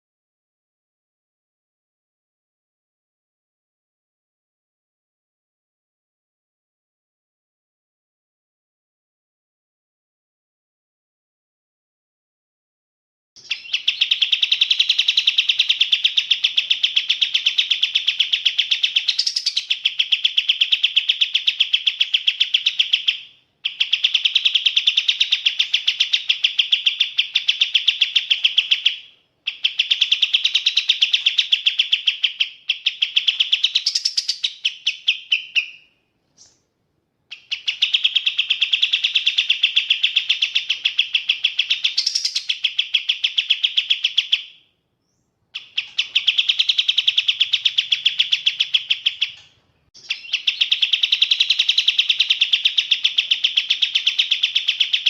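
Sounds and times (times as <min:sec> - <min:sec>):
songbird rapid high chattering: 0:13.4 - 0:35.8, 0:37.3 - 0:44.4, 0:45.6 - 0:55.0.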